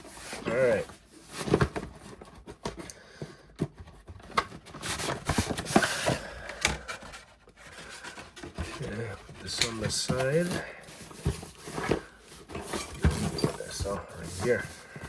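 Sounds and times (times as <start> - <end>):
box contents knocking and scraping: 0.0 - 15.0
packaging rustling: 3.6 - 15.0.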